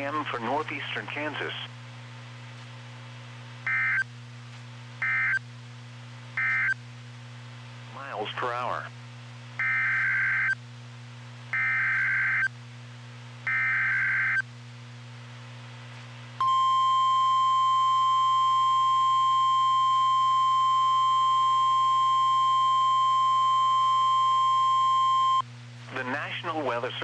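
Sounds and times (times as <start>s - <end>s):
low radio hum: 0.0s - 2.9s, 7.8s - 9.0s, 16.4s - 27.0s
steady alarm tone: 16.4s - 25.4s.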